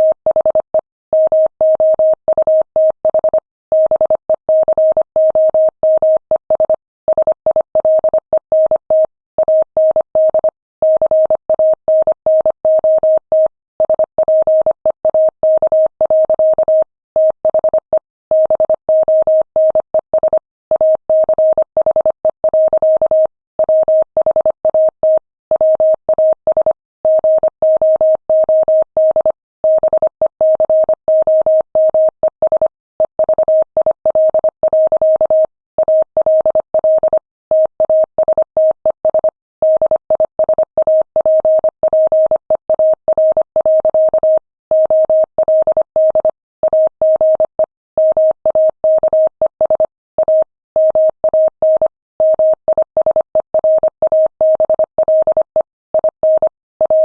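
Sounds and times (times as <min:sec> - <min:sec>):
morse code beeps: 0:00.0 - 0:57.0.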